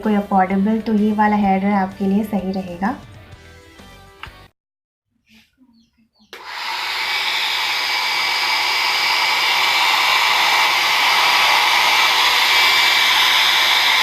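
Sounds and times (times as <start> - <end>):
hair dryer blowing with high whine: 6.4 - 14.0.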